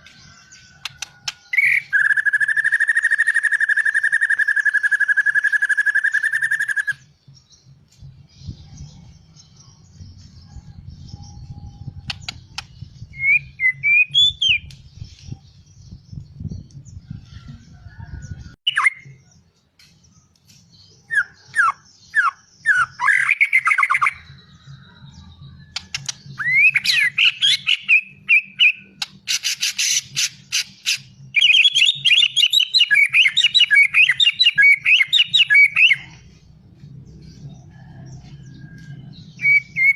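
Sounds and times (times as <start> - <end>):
bird singing whistles and trills: 0.9 - 7.6, 8.2 - 16.9, 21.0 - 36.4, 39.2 - 39.9.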